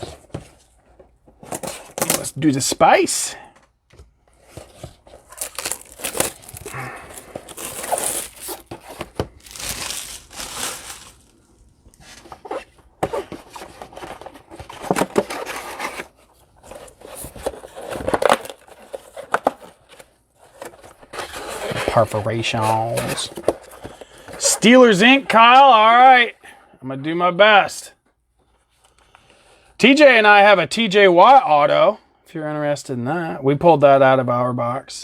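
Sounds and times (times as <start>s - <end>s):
packaging crinkling and tearing: 1.5s - 2.3s, 4.6s - 11.7s, 16.7s - 20.6s.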